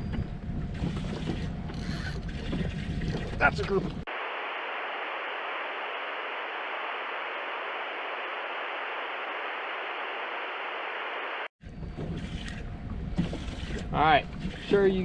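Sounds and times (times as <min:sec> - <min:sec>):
steady static hiss: 0:04.1 - 0:11.5.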